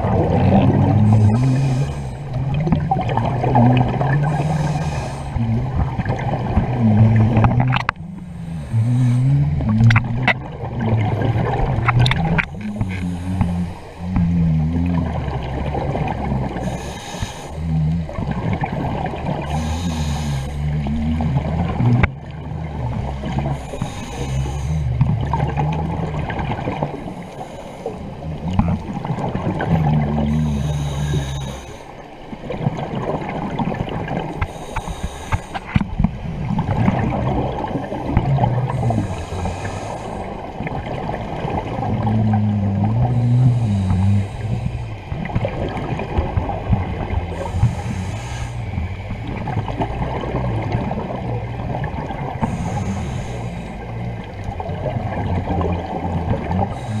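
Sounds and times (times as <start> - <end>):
bubbly gurgling exhalations: 0.0 - 27.2, 27.8 - 31.8, 32.4 - 57.0
churning water: 0.0 - 57.0
hissing regulator inhalation: 4.4 - 5.4, 16.6 - 17.6, 19.5 - 20.6, 23.6 - 24.8, 34.5 - 35.8, 38.8 - 40.4, 47.4 - 48.7, 52.4 - 53.9.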